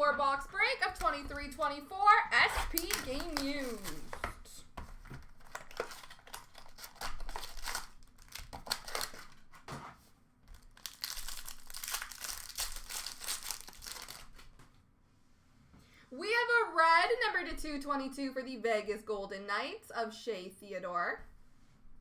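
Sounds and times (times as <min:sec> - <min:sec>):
wrapper crackling and tearing: 0:02.5 - 0:04.2, 0:05.3 - 0:09.6, 0:10.5 - 0:14.5.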